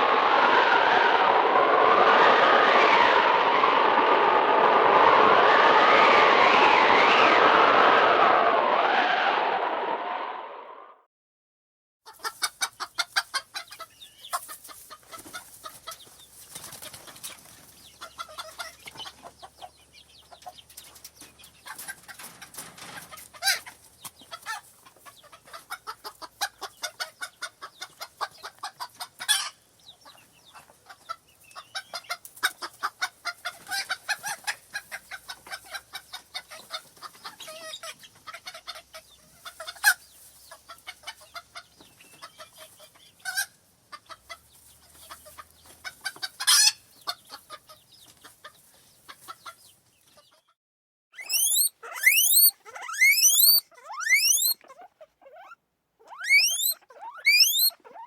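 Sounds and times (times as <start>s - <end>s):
chickens clucking: 12.1s - 50.5s, 51.3s - 58.0s.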